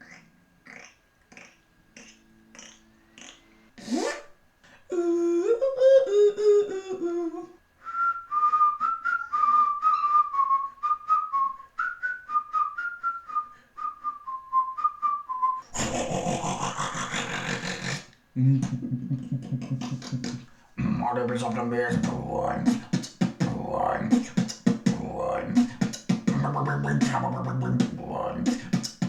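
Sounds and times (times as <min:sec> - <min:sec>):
beatbox clicks: 0:00.0 - 0:04.3, 0:15.8 - 0:29.0
person humming a phrase: 0:04.9 - 0:07.6, 0:15.7 - 0:29.0
whistle-like melody: 0:07.8 - 0:15.7.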